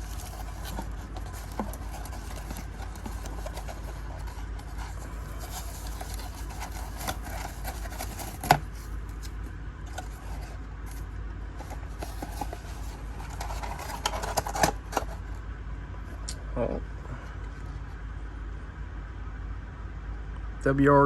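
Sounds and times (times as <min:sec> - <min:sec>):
cardboard package rubbing and scraping: 0:00.0 - 0:15.4
steady low hum: 0:00.0 - 0:21.0.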